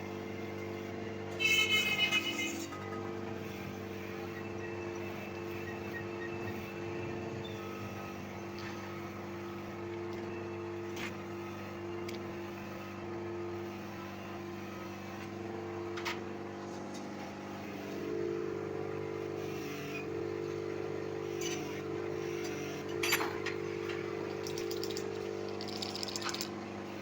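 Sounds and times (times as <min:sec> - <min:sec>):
machine humming: 0:17.2 - 0:27.0.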